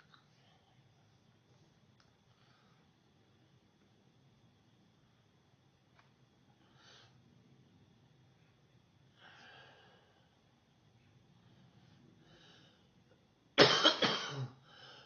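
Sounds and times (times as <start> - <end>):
faint breathing: 1.5 - 3.1, 6.5 - 7.4, 9.1 - 13.1, 14.6 - 15.0
person coughing: 13.6 - 14.6.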